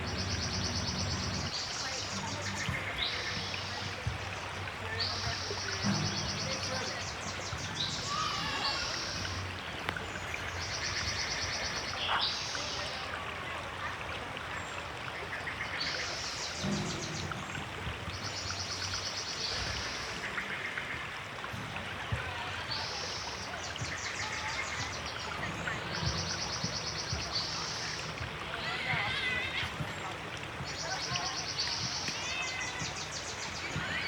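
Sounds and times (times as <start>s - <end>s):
bird singing high rapid trill: 0.0s - 3.8s
river water flowing: 0.0s - 34.0s.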